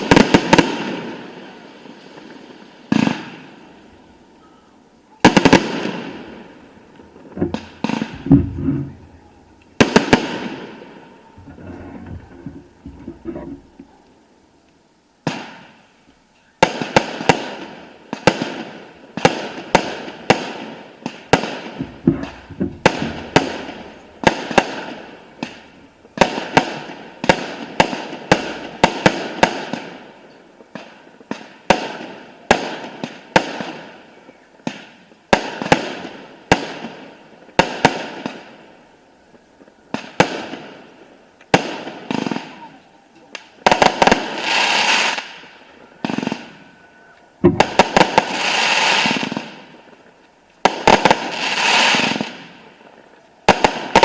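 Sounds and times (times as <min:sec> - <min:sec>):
firework shells bursting: 0:00.0 - 0:04.3, 0:05.2 - 0:14.2, 0:15.2 - 0:34.0, 0:34.6 - 0:52.8.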